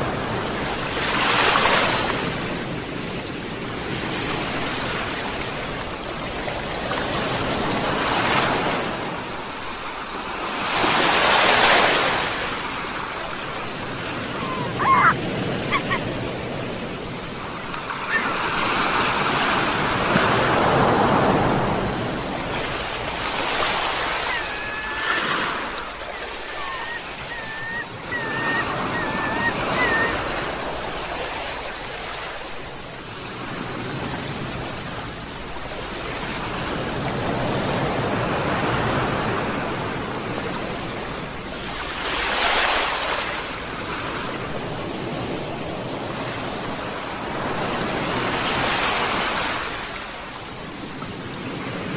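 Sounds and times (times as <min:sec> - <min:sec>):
sea waves breaking on shore: 0:00.0 - 0:51.9
seagull calls: 0:14.2 - 0:16.1, 0:17.9 - 0:18.7, 0:23.9 - 0:30.9.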